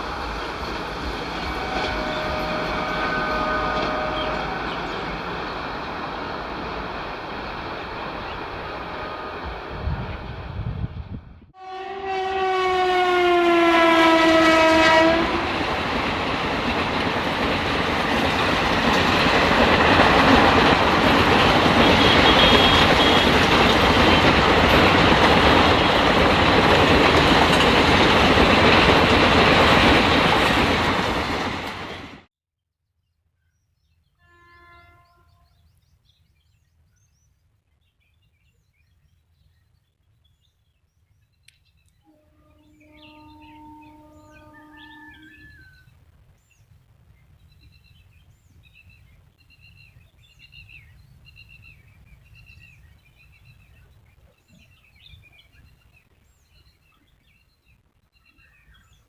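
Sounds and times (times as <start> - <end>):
train wheels on rails: 0.0 - 10.6, 14.4 - 32.3
train horn: 1.4 - 5.1, 11.5 - 15.8, 21.6 - 24.3, 34.2 - 35.7, 42.0 - 45.8.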